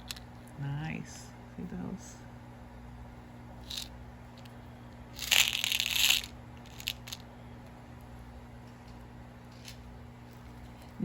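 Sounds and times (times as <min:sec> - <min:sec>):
bead packet crinkling rattle: 0:03.6 - 0:03.9, 0:05.2 - 0:07.2.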